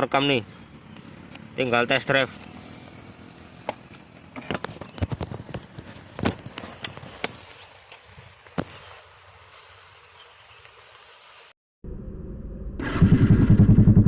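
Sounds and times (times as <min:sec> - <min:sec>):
handling clicks and knocks: 0:03.6 - 0:07.4.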